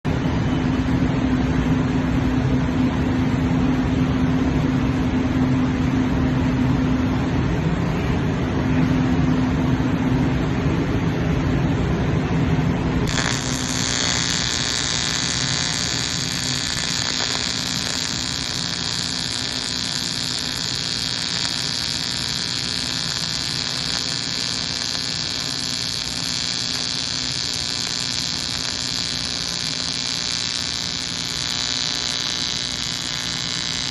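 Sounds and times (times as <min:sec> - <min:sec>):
welding arc buzz and hiss: 0:13.0 - 0:33.9.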